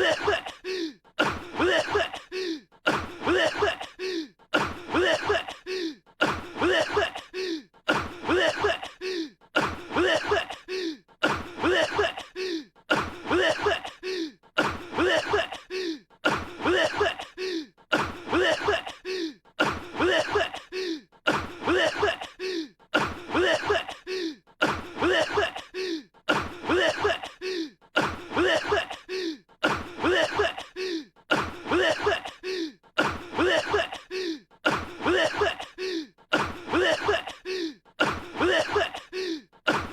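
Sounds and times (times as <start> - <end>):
cartoon voice coughing: 0.0 - 0.6, 1.2 - 2.3, 2.9 - 4.0, 4.6 - 9.0, 9.6 - 10.7, 11.3 - 12.4, 13.0 - 14.0, 14.6 - 15.7, 16.6 - 17.4, 18.0 - 19.0, 19.6 - 20.7, 21.3 - 22.4, 23.0 - 27.4, 28.0 - 29.1, 29.7 - 32.4, 33.0 - 34.1, 34.7 - 35.8, 36.4 - 39.9.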